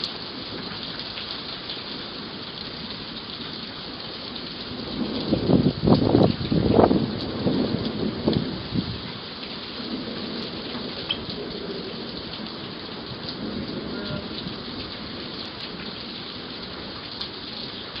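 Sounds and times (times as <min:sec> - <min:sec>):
hailstones ticking: 0:00.0 - 0:18.0
heavy rain hissing: 0:03.9 - 0:18.0.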